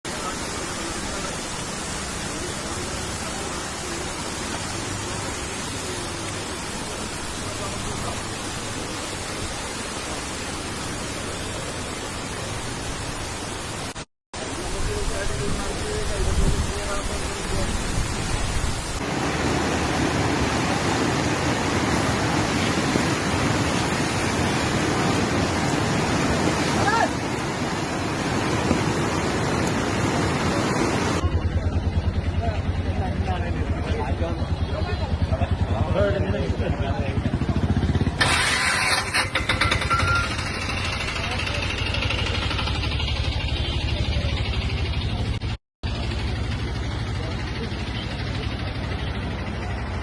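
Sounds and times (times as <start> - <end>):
heavy rain pouring: 0.1 - 50.0
heavy water rushing: 0.1 - 50.0.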